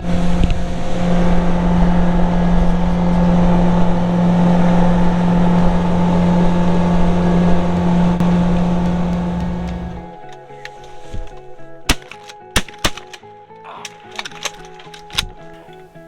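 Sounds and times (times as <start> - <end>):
boat motor droning: 0.0 - 10.3.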